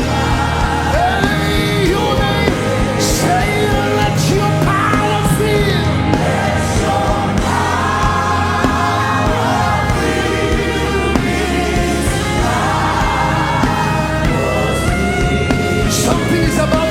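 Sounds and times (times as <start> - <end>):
keyboard chords: 0.0 - 16.9
person singing: 0.0 - 16.9
steady bass: 0.0 - 16.9.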